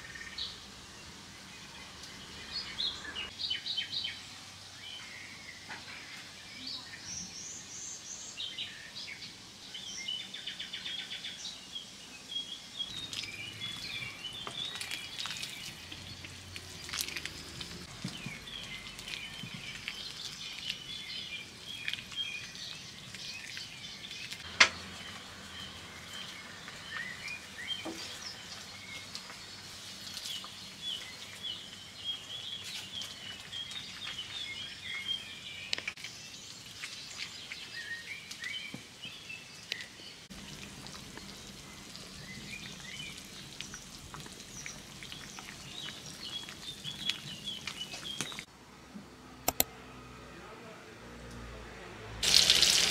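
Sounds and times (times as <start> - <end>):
small birds chirping: 0.0 - 48.5
sharp clicks: 49.4 - 49.7.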